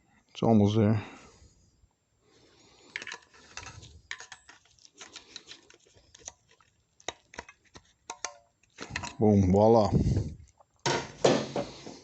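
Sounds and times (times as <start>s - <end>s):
plastic clicks and scrapes: 2.9s - 9.2s.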